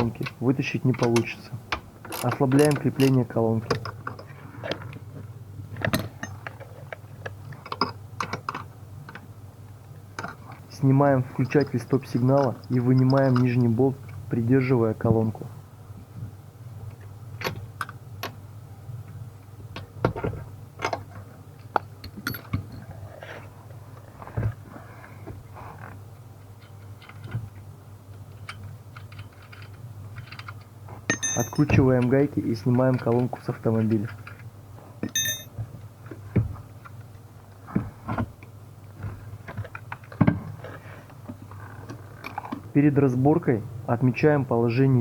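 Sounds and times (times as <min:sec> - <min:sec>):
steady low hum: 0:00.0 - 0:36.1
hand tools clicking and knocking: 0:02.0 - 0:04.3, 0:28.4 - 0:32.2, 0:35.0 - 0:35.5
hand tools knocking and clicking: 0:31.1 - 0:32.1, 0:35.0 - 0:35.5.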